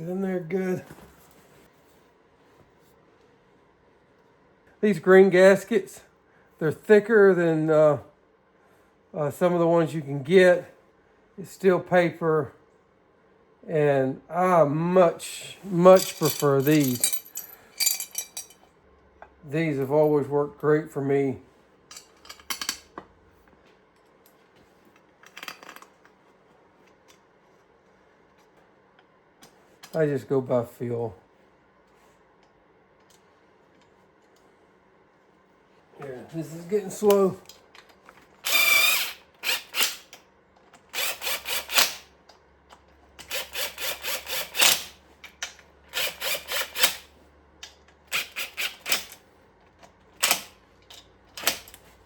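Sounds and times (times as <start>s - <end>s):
metal tools clicking and clinking: 15.7s - 18.7s, 21.9s - 22.9s
hand ratchet rasping clicks: 40.9s - 42.0s, 43.2s - 47.1s, 48.1s - 49.2s.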